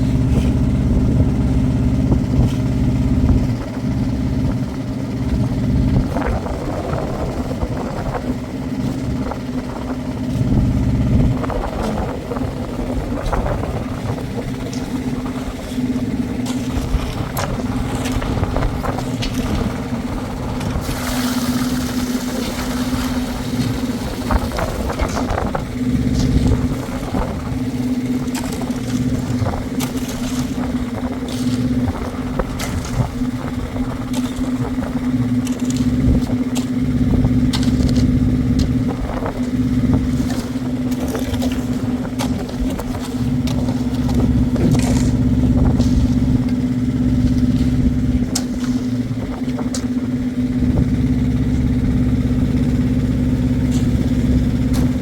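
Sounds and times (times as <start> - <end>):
engine running steadily: 0.0 - 55.0
low rumble: 0.0 - 55.0
knocks and scrapes: 7.3 - 50.0.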